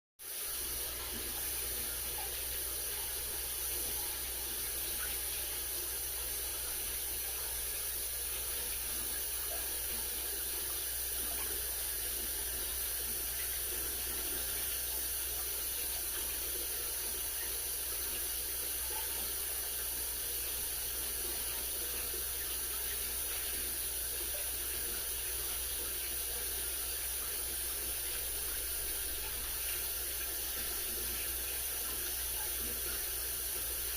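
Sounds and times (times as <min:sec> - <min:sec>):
aquarium water running: 0:00.2 - 0:33.9.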